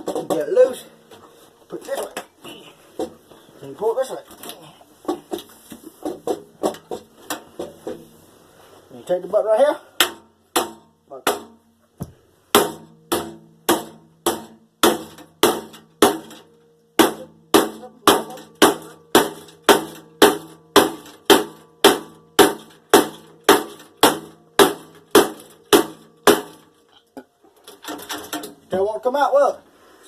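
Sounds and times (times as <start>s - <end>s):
hammer striking metal: 12.5s - 26.7s.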